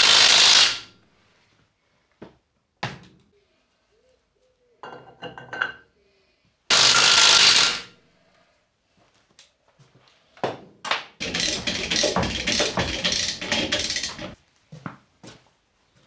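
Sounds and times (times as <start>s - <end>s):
power tool spinning a nut: 0.0s - 0.9s, 6.7s - 7.9s, 11.2s - 14.4s.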